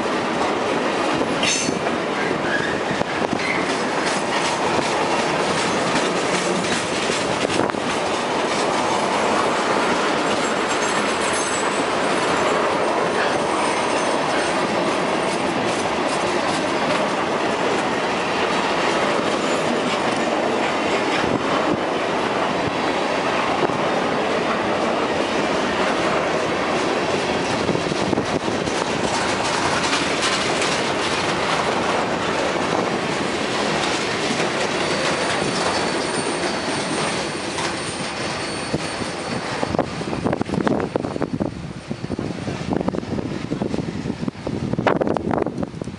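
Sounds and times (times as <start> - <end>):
train wheels clattering on rails: 0.0 - 45.9
faint wheel squeal: 2.4 - 2.8, 35.2 - 39.9.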